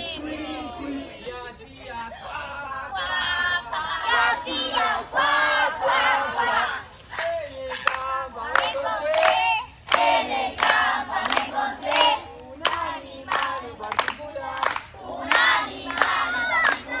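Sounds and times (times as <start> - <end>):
group singing together: 0.0 - 17.0
hand claps: 7.1 - 17.0.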